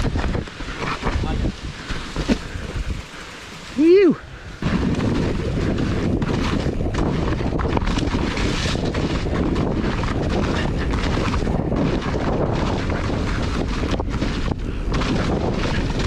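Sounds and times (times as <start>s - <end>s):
wind rushing over microphone: 0.0s - 16.0s
low rumble: 1.1s - 11.8s.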